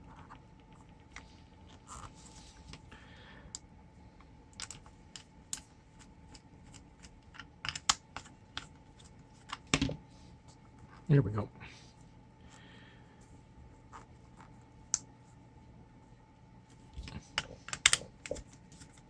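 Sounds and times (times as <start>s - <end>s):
tools clicking and tapping: 6.3s - 8.7s, 17.3s - 18.5s.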